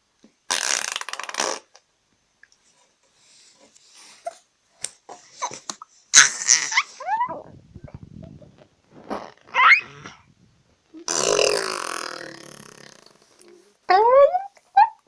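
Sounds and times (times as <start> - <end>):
lips blowing raspberry: 6.2 - 10.4, 11.0 - 13.6.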